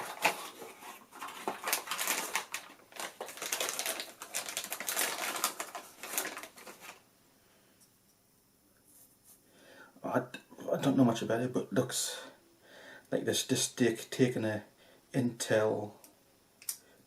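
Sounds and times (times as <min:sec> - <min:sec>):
packaging rustling and crinkling: 0:00.0 - 0:07.0.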